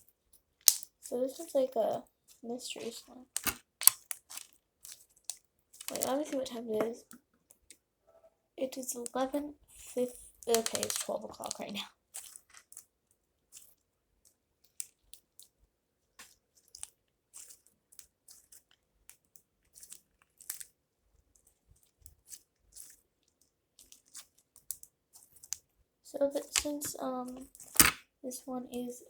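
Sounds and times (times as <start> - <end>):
slime crackling and clicking: 0.6 - 1.0, 3.3 - 6.4, 10.4 - 12.8, 26.4 - 28.0.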